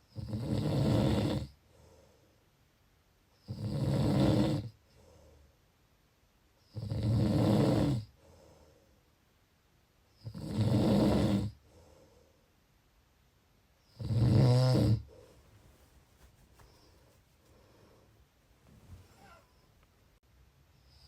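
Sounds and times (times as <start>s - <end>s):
loud snores: 0.1s - 1.6s, 3.4s - 4.8s, 6.7s - 8.1s, 10.2s - 11.6s, 13.9s - 15.1s
faint breath: 1.6s - 2.6s, 4.8s - 5.7s, 8.1s - 9.1s, 11.6s - 12.6s, 15.0s - 19.9s.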